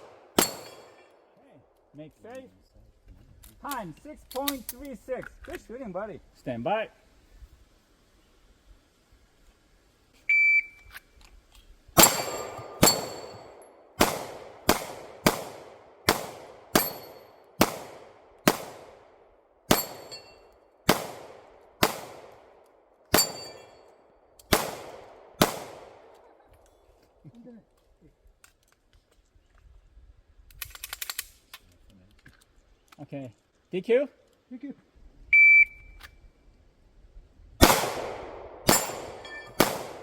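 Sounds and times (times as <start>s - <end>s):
gunshots: 0.0s - 1.1s, 12.0s - 19.0s, 19.7s - 20.3s, 20.9s - 22.5s, 23.1s - 23.8s, 24.5s - 26.1s, 37.6s - 40.0s
shot timer beep: 35.4s - 35.9s.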